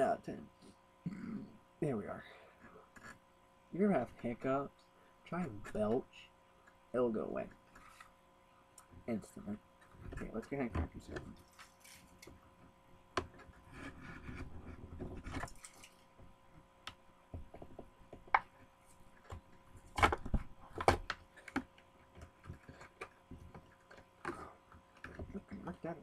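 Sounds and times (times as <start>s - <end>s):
plastic and card rustling: 11.0s - 12.4s.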